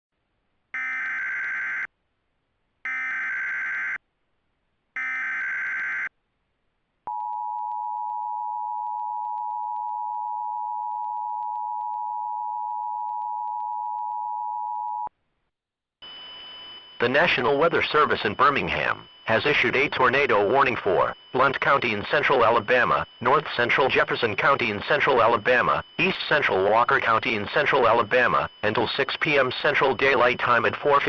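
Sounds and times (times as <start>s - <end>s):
warbling data bursts: 17.0s - 31.0s.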